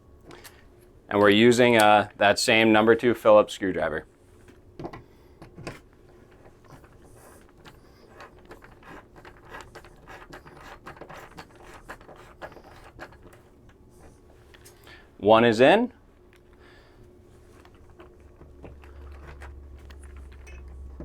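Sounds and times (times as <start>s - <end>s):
screwdriver scraping and clicking: 6.4s - 13.5s.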